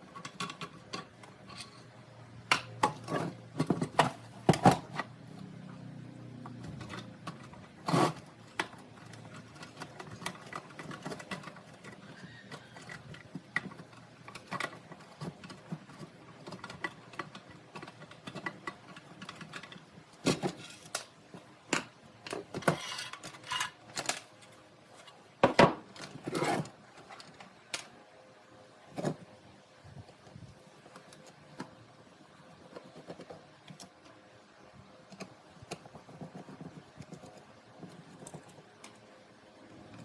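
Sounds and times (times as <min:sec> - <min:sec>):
clicks and scrapes of tools: 0:22.3 - 0:25.2.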